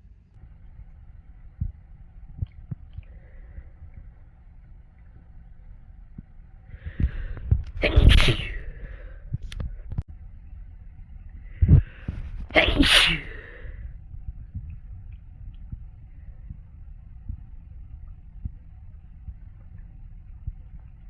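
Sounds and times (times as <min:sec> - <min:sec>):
person sneezing: 0:07.8 - 0:09.0, 0:12.5 - 0:13.7.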